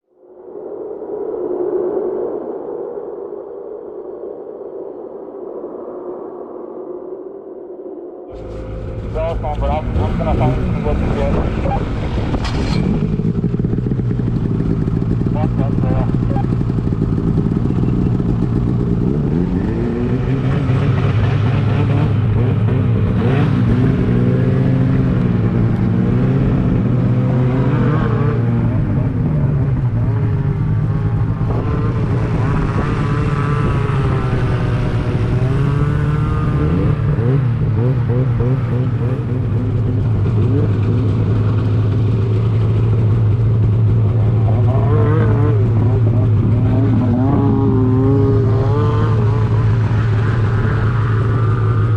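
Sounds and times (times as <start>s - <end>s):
steady low hum: 7.0s - 19.3s
snowmobile engine revving: 8.3s - 51.9s.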